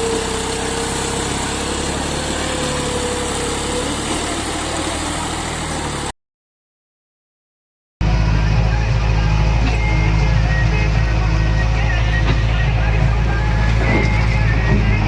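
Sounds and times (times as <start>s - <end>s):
diesel engine running: 0.0s - 6.1s, 8.0s - 15.0s.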